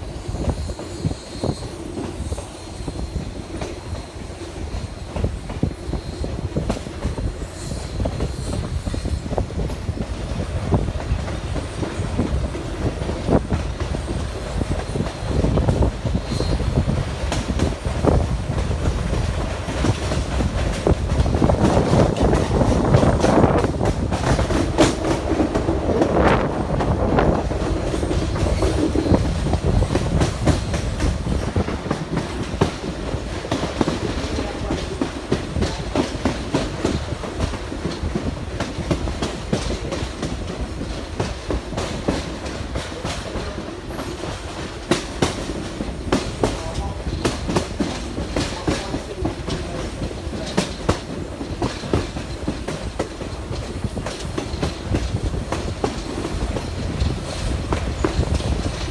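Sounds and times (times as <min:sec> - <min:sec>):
low rumble of rolling railcars: 0:00.0 - 0:58.9
train wheels clicking over rail joints: 0:00.0 - 0:58.9.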